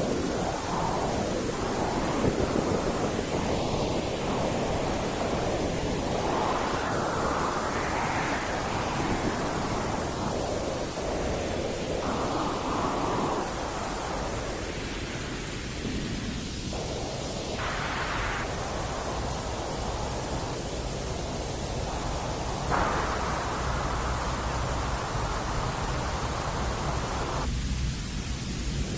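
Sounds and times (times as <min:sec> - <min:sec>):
white noise hiss: 0:00.0 - 0:28.9.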